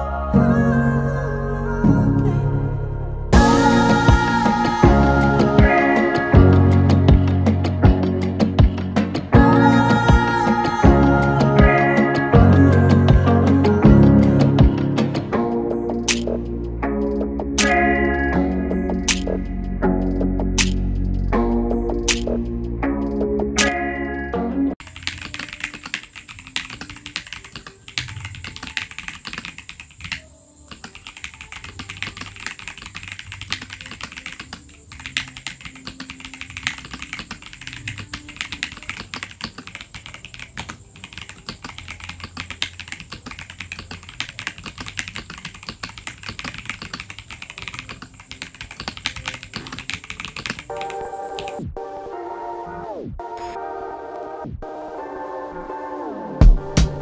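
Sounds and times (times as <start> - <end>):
mechanical keyboard typing: 19.1 - 19.4, 24.8 - 51.6.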